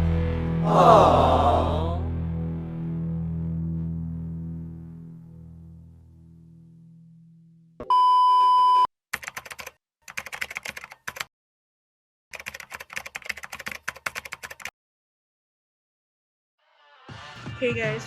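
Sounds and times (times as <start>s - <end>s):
keyboard typing clicks: 9.2s - 11.3s, 12.4s - 14.7s.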